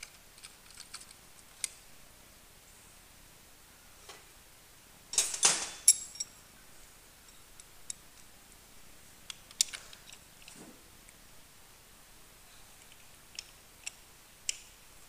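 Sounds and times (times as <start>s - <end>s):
metal tools clinking: 5.1s - 6.4s.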